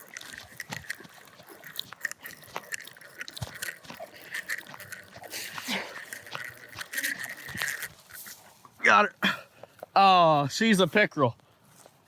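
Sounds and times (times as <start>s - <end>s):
fishing reel clicking: 0.0s - 8.4s.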